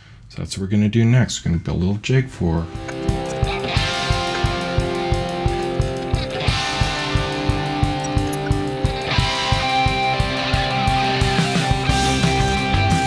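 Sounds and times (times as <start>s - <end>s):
fast drum beat: 2.7s - 13.0s
rock music with electric guitar: 2.7s - 13.0s.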